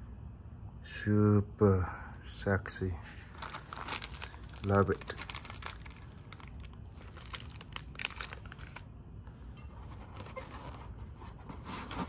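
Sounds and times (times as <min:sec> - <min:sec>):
packaging rustling: 0:03.1 - 0:08.8, 0:09.8 - 0:12.0.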